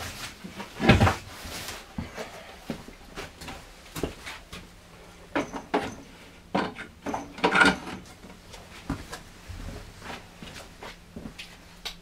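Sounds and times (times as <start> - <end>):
hard objects knocking and clattering: 5.3 - 8.0.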